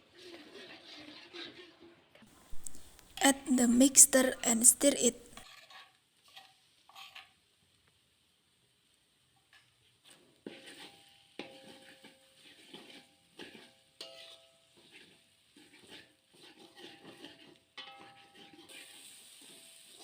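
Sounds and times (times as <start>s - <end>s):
spatula scraping frying pan: 10.1s - 19.9s.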